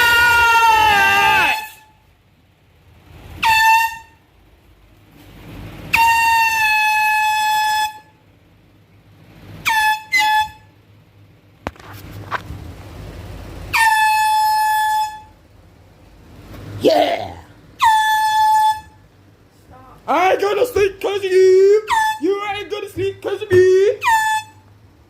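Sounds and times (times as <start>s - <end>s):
air horn blasts: 1.2s - 2.0s, 3.3s - 4.2s, 5.9s - 8.2s, 9.6s - 10.8s, 13.7s - 15.3s, 17.8s - 19.0s, 20.8s - 24.7s.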